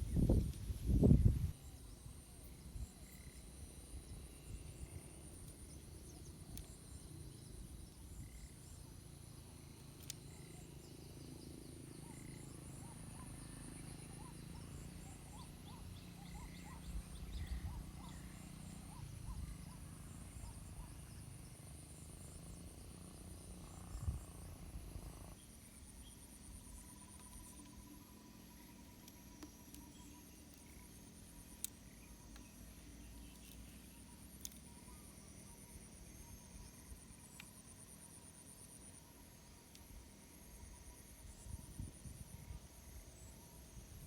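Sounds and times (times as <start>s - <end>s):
wind buffeting microphone: 0.0s - 1.6s
pulsing insect drone: 0.0s - 44.0s.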